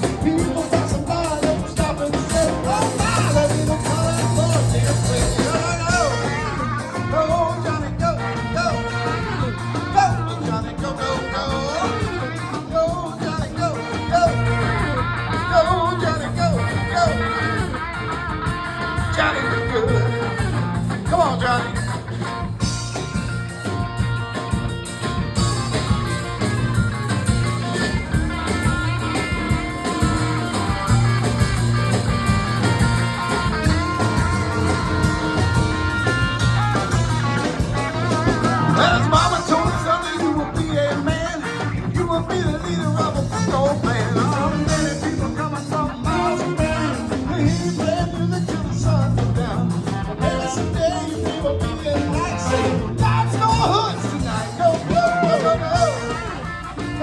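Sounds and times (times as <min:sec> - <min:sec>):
person singing: 0:00.0 - 0:22.0, 0:37.7 - 0:57.0
bass line: 0:00.0 - 0:57.0
swing band playing: 0:00.0 - 0:57.0.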